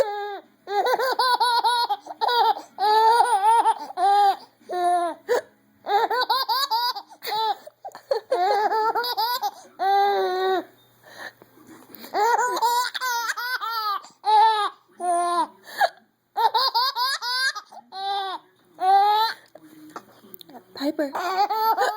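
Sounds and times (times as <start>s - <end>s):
baby laughing: 0.0s - 5.1s, 5.9s - 10.5s, 12.0s - 15.5s, 16.4s - 19.4s, 21.1s - 21.9s.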